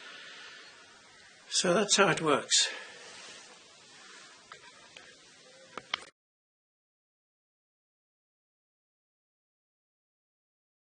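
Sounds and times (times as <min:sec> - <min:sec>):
faint background hiss: 0:00.0 - 0:06.1
sharp clicks: 0:05.7 - 0:06.1.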